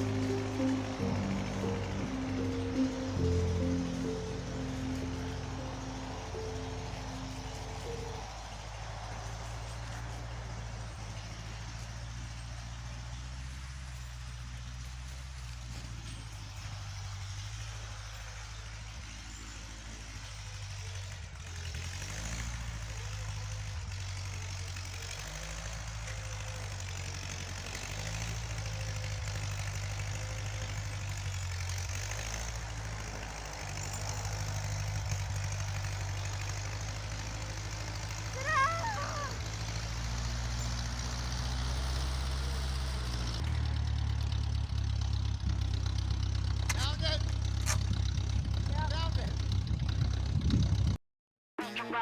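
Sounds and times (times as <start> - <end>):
high wavering squeal: 0.0 - 11.2, 38.3 - 40.0
engine running steadily: 0.0 - 51.0.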